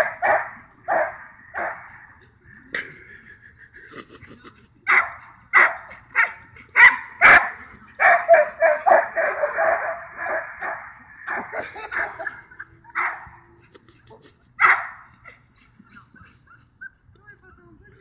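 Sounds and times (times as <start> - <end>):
dog barking: 0.0 - 2.0, 4.9 - 12.4, 13.0 - 13.4, 14.6 - 15.4.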